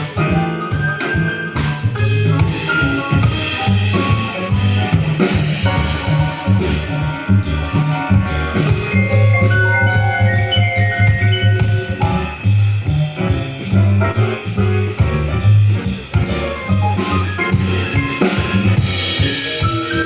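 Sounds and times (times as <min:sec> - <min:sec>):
drum kit keeping time: 0:00.0 - 0:20.0
repeating bass line: 0:05.6 - 0:13.6
melodic instrument lines: 0:08.5 - 0:12.8.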